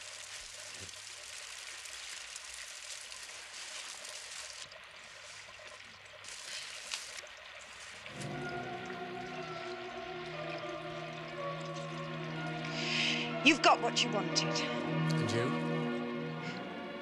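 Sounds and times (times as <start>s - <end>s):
steady rain falling: 0.0s - 17.0s
music: 8.1s - 17.0s.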